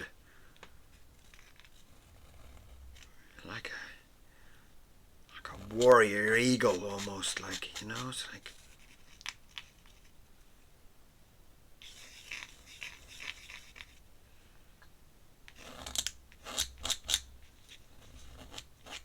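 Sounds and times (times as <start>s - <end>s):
pen nib scratching on paper: 0.9s - 3.2s, 5.4s - 10.1s, 11.8s - 14.0s, 15.5s - 19.0s.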